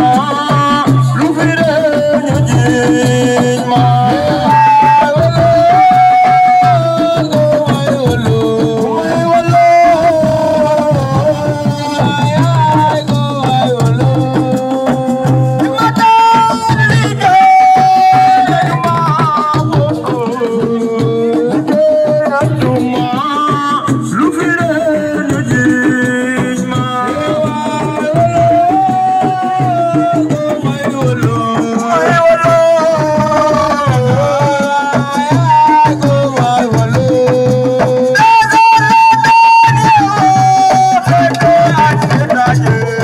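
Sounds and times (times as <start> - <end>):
hand drums and percussion: 0.0 - 43.0
person singing gliding melody: 15.6 - 37.4.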